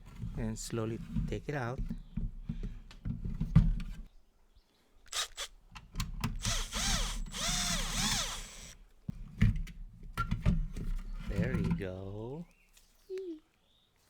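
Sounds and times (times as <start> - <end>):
cordless drill motor whirring: 5.1 - 5.6, 6.4 - 8.8.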